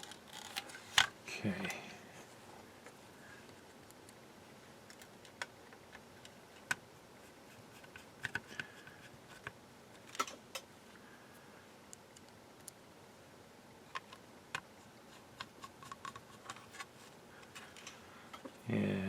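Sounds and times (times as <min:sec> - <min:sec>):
plastic parts clicking: 0:00.0 - 0:01.1.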